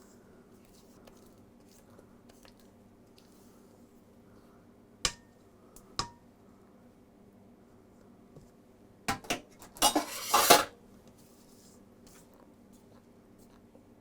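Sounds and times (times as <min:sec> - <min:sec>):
scraping and clatter in bowl: 0:09.8 - 0:10.7.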